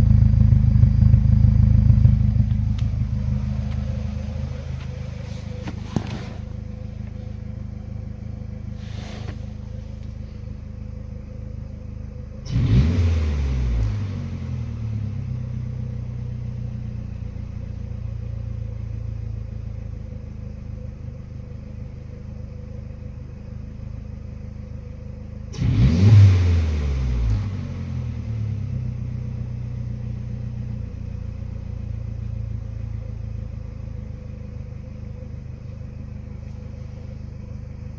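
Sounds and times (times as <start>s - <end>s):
engine revving: 0.0s - 10.4s, 12.4s - 16.0s, 25.5s - 28.8s
car engine idling roughly: 0.0s - 12.7s, 28.9s - 37.9s.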